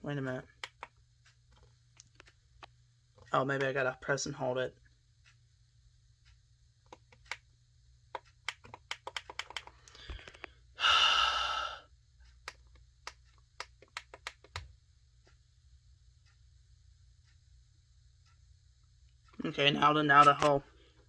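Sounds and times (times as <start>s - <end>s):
breathy sigh: 10.0s - 11.9s.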